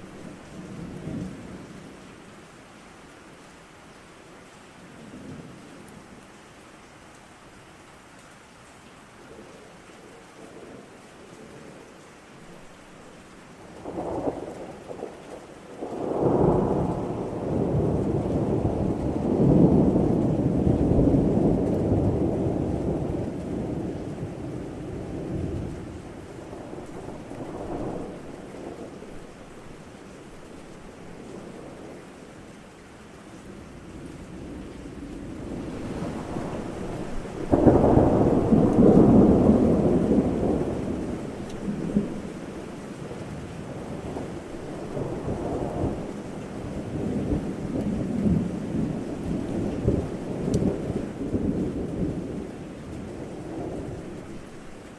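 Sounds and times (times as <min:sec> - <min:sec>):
steady rain: 0:00.0 - 0:54.9
rolling thunder rumble: 0:13.8 - 0:32.4, 0:33.4 - 0:54.5
thunder cracks: 0:35.4 - 0:42.2.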